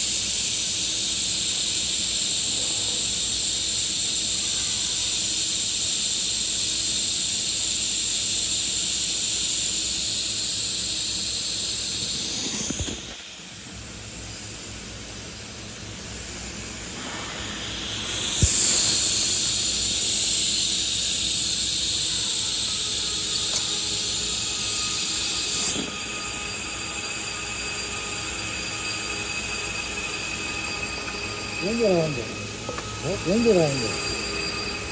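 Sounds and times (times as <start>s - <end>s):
welding arc sizzling: 0.0s - 34.9s
welder striking click: 23.4s - 23.8s.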